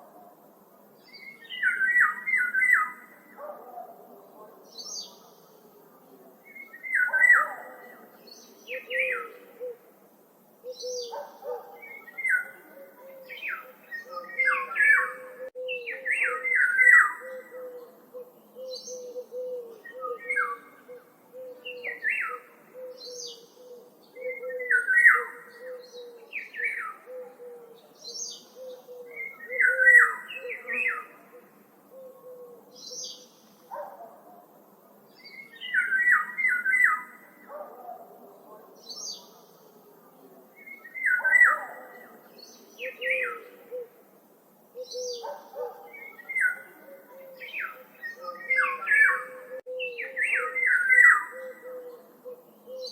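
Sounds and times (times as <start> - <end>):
birds chirping: 44.7 - 52.9.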